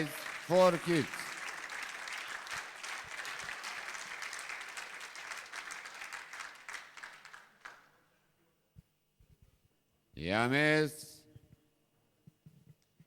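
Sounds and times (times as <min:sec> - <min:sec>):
audience applauding: 0:00.0 - 0:07.9.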